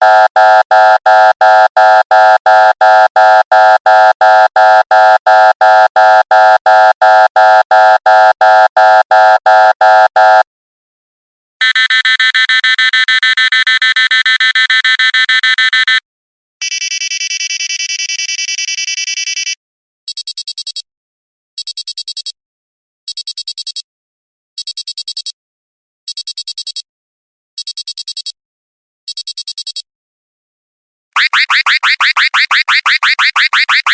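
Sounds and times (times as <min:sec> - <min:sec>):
pulsing buzzer alarm: 0:00.0 - 0:10.5, 0:11.6 - 0:16.0, 0:31.2 - 0:33.9
rapid beeps: 0:16.6 - 0:19.6, 0:31.2 - 0:33.9
warbling alarm tone: 0:31.2 - 0:33.9.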